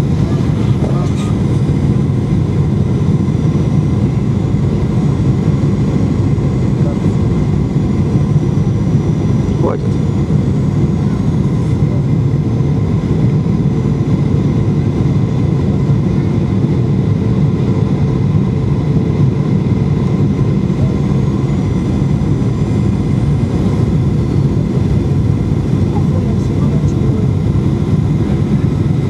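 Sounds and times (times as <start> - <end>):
jet engine and airflow noise: 0.0 - 29.0.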